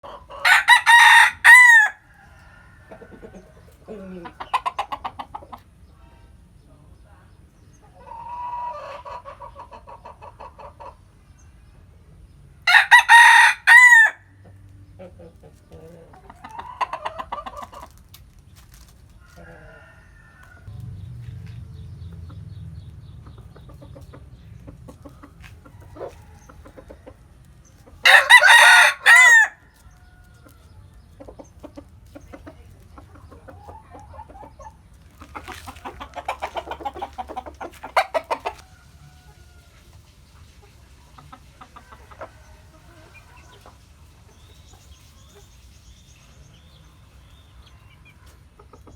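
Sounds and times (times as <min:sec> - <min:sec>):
chickens crowing and clucking: 0:00.0 - 0:06.6, 0:07.6 - 0:48.9
rooster crowing loudly: 0:00.3 - 0:02.9, 0:12.6 - 0:14.2, 0:28.0 - 0:29.7.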